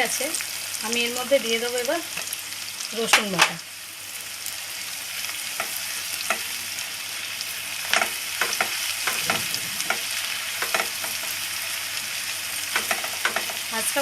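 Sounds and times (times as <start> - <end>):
onion sizzling in hot oil: 0.0 - 14.0.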